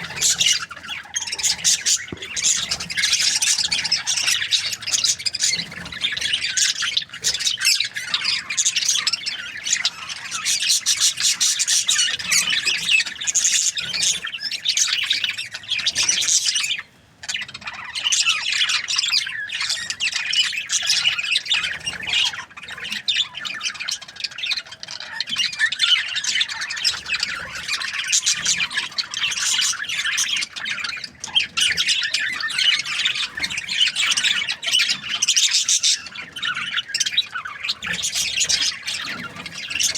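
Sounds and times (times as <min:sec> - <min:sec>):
budgies chirping and squawking: 0:00.0 - 0:39.9.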